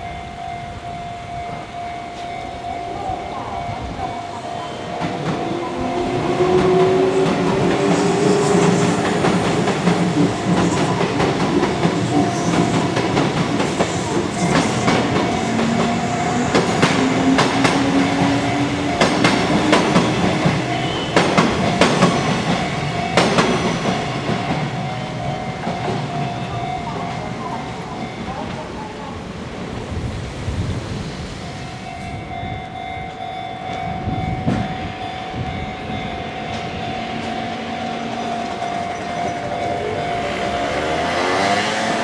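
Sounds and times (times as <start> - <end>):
crossing warning bell: 0.0 - 30.2, 31.4 - 42.0
wheels clattering over rail joints: 2.2 - 30.0.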